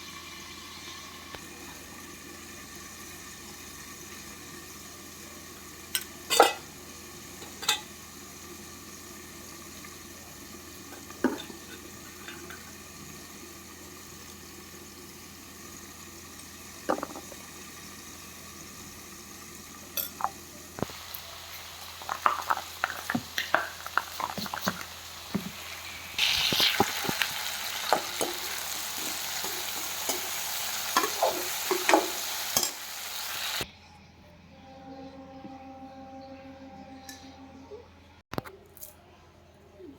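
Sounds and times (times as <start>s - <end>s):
frying sizzle: 0.0s - 33.7s.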